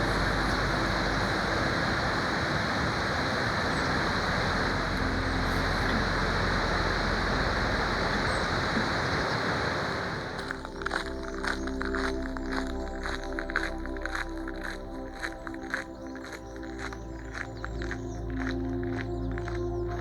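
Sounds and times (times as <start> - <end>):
waterfall roaring: 0.0 - 11.2.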